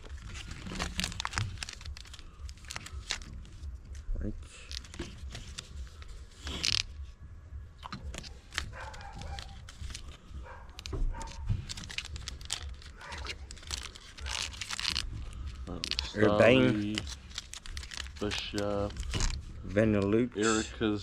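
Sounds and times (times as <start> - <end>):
foil wrappers crinkling: 0.0 - 7.0, 7.8 - 20.2
trading cards being handled: 0.0 - 20.6.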